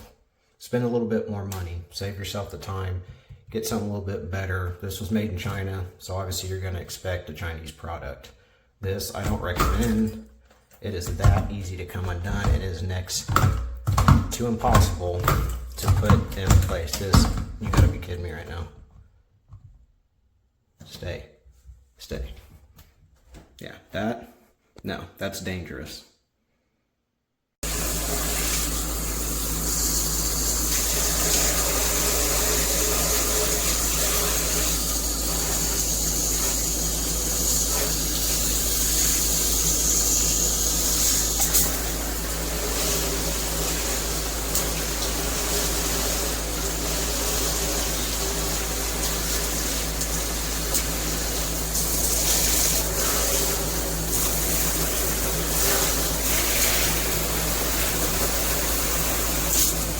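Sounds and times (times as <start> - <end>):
shower water spraying: 27.6 - 59.9.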